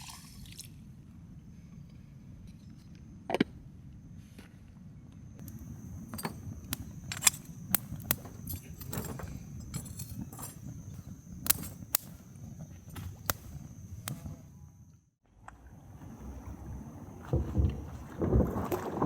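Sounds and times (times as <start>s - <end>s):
sharp clicks and clinks: 5.4s - 14.2s.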